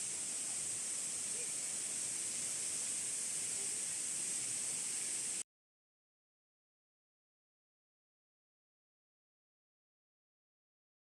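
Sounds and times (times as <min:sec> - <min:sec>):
waterfall rushing water: 0:00.0 - 0:05.4.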